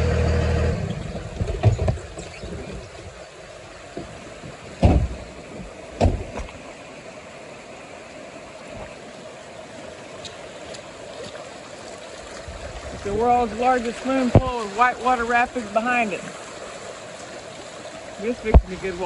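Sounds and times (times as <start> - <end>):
vehicle engine idling: 0.0 - 1.6
rushing floodwater: 0.0 - 19.0
sharp thumps: 4.8 - 6.5.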